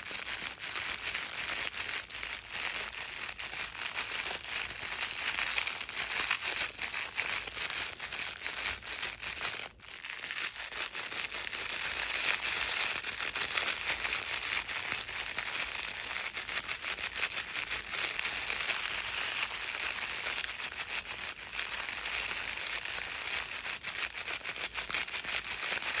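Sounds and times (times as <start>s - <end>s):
crinkle book rustling: 0.0s - 15.6s.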